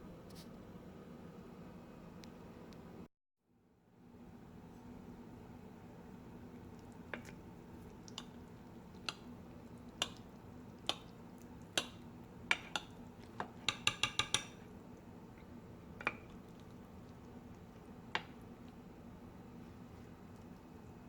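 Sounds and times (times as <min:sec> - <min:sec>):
cutlery tapping on plate: 0:10.0 - 0:10.2, 0:11.7 - 0:14.6.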